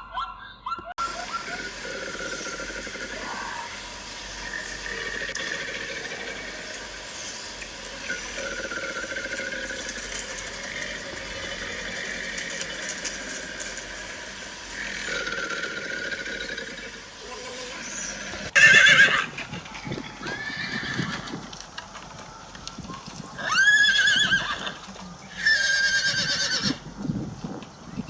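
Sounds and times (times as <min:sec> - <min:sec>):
steady sound with long held tones: 0:01.0 - 0:27.0
horse whinnying: 0:15.0 - 0:21.6, 0:23.0 - 0:27.0.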